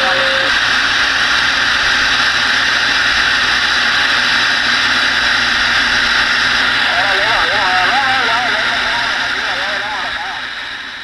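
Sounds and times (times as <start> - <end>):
radio receiver static: 0.0 - 0.6, 6.8 - 10.5.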